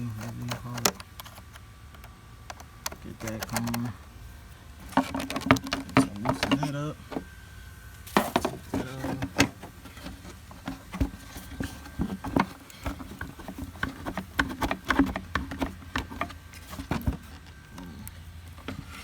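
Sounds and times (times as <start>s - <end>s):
plastic and metal parts clicking: 0.0s - 4.0s, 4.8s - 7.3s.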